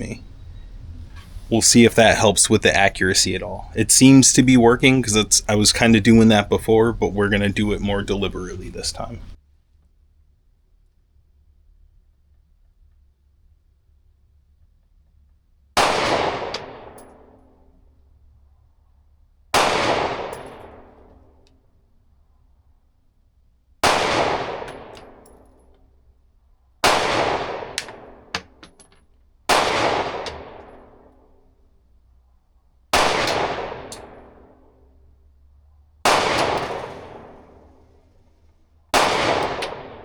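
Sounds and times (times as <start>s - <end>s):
pistol shots with echo: 1.8s - 9.4s, 15.8s - 17.0s, 19.6s - 21.0s, 23.8s - 25.2s, 26.8s - 28.6s, 29.5s - 31.3s, 33.0s - 34.6s, 36.1s - 38.0s, 39.0s - 40.0s.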